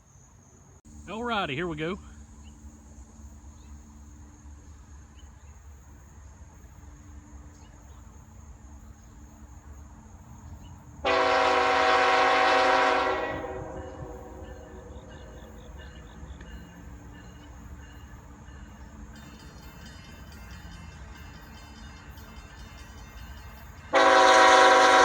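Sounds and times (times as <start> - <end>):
locomotive air horn blast: 11.0 - 14.8, 23.9 - 25.0.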